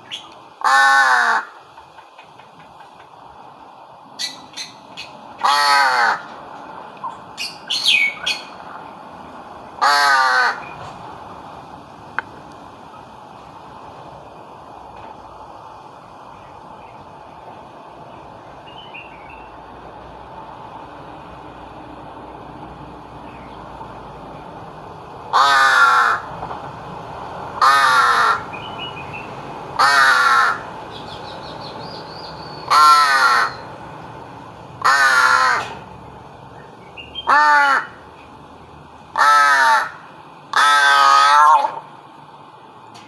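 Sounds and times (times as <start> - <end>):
crow cawing: 0.6 - 1.6, 5.4 - 6.4, 9.8 - 10.8, 25.3 - 26.3, 27.6 - 28.5, 29.8 - 30.7, 32.6 - 33.7, 34.8 - 35.8, 37.2 - 38.0, 39.1 - 41.8.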